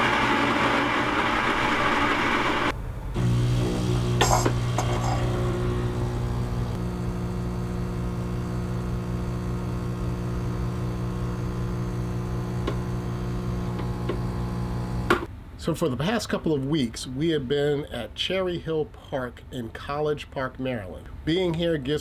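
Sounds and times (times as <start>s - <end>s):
low electrical hum: 2.8s - 15.7s.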